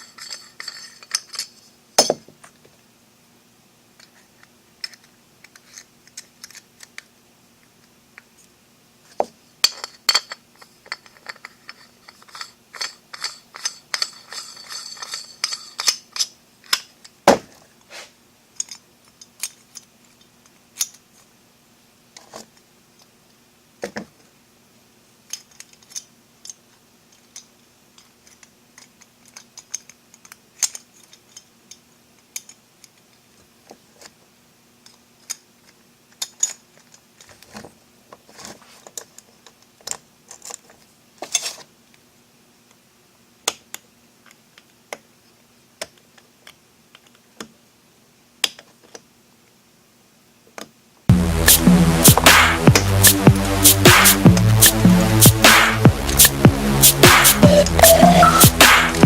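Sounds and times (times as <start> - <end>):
metal parts jangling rattle: 0.0 - 2.2, 9.6 - 16.3
metal lock parts clicking: 9.7 - 17.2.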